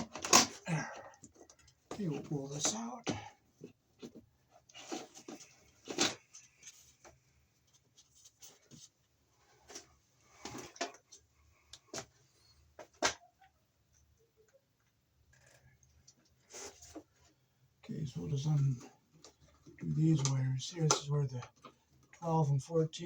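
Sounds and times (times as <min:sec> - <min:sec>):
cable scraping and rustling: 0:03.6 - 0:12.5, 0:15.3 - 0:17.4.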